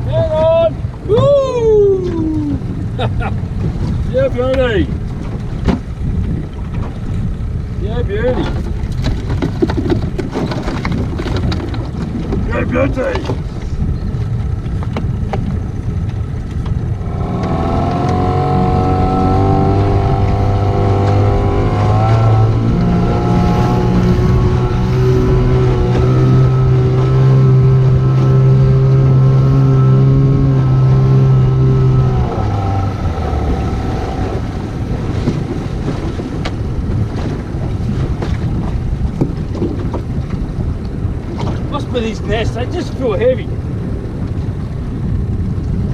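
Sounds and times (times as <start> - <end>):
outboard motor running: 0.0 - 45.9
water noise: 0.0 - 45.9
wind on microphone: 0.0 - 45.9.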